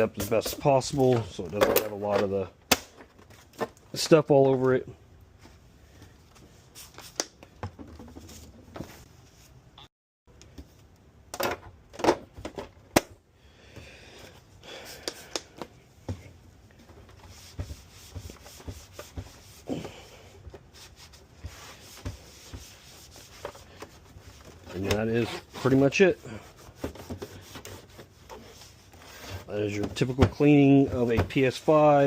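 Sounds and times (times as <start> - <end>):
wiping plastic casing: 16.8 - 32.0.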